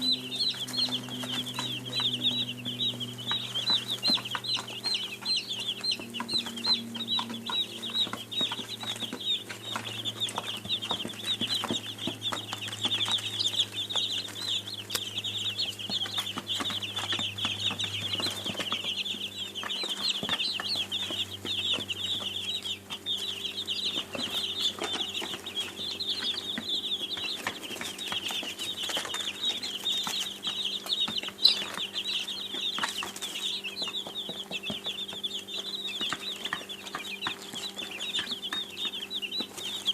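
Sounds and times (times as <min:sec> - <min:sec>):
low hum: 0:00.0 - 0:32.4
baby chicks peeping: 0:00.0 - 0:39.9.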